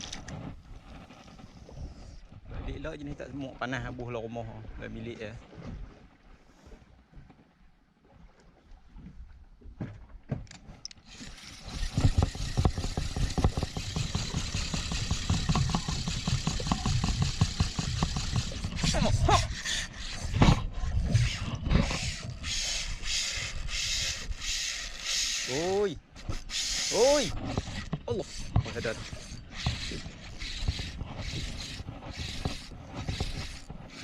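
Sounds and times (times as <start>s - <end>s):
boat engine running: 11.0s - 34.0s.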